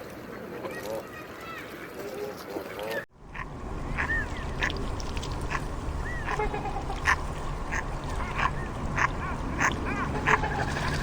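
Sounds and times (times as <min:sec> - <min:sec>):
ducks quacking: 0:02.8 - 0:11.0
steady low rumble: 0:03.1 - 0:11.0
thin arching duck calls: 0:03.3 - 0:11.0.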